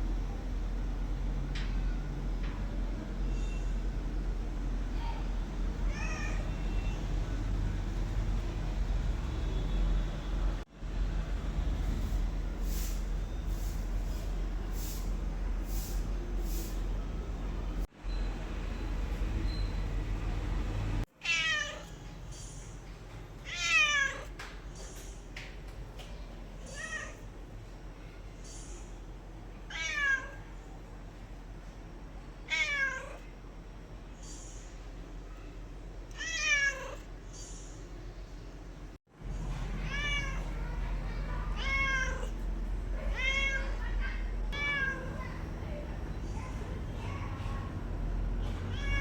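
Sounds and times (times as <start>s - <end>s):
cat meowing: 5.8s - 7.0s, 21.2s - 22.0s, 23.5s - 24.3s, 29.7s - 30.5s, 32.5s - 33.3s, 36.1s - 37.1s, 39.8s - 40.8s, 41.4s - 42.4s, 43.0s - 43.9s, 44.5s - 45.3s, 48.7s - 49.0s.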